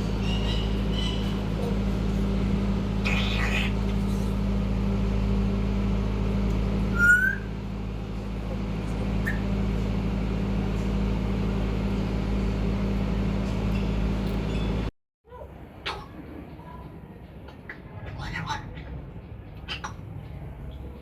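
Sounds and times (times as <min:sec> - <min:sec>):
parrot chirp: 0:00.0 - 0:01.7, 0:03.0 - 0:03.8, 0:06.9 - 0:07.5, 0:09.2 - 0:09.5, 0:17.5 - 0:19.0
steady low hum: 0:00.0 - 0:14.9
parrot whistle: 0:06.9 - 0:07.5.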